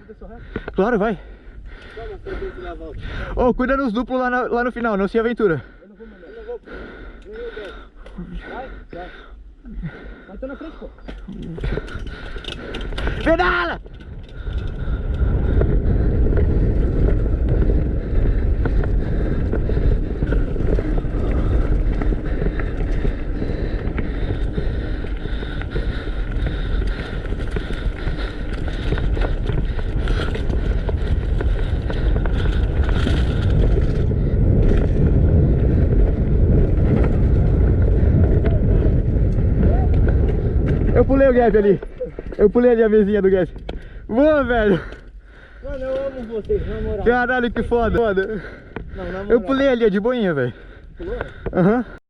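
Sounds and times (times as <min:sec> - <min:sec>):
wind buffeting microphone: 0:00.0 - 0:05.8, 0:10.9 - 0:52.0
bike tyres rolling: 0:06.3 - 0:52.0
bike knocks and rattles: 0:11.0 - 0:42.5.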